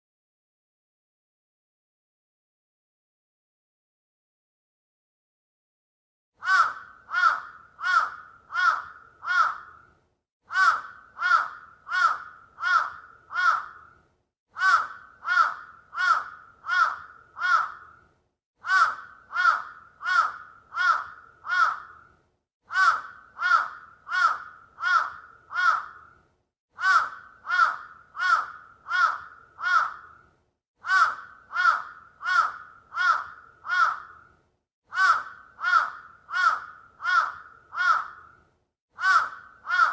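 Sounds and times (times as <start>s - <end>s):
crow cawing: 6.4s - 9.9s, 10.5s - 14.0s, 14.6s - 22.1s, 22.7s - 26.2s, 26.8s - 34.3s, 34.9s - 38.4s, 39.0s - 39.9s.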